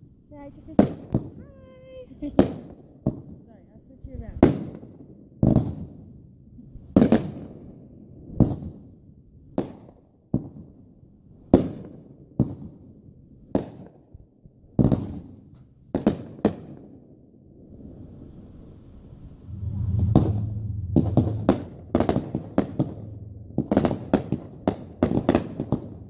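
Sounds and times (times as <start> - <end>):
fireworks booming with echo: 23.6 - 26.0.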